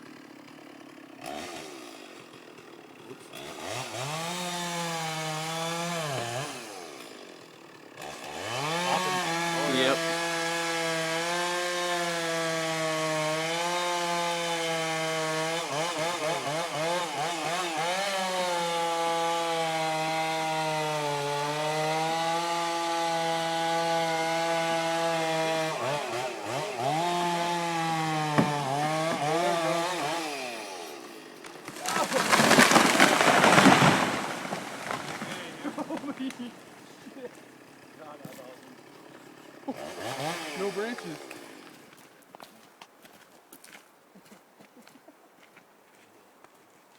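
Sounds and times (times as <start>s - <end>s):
chainsaw cutting: 0.0s - 42.6s
tree crashing down: 27.9s - 30.2s, 31.4s - 37.2s.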